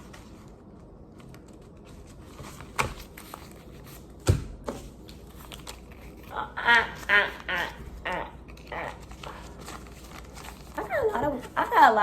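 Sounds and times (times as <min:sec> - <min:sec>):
banknotes crinkling: 0:08.5 - 0:12.0.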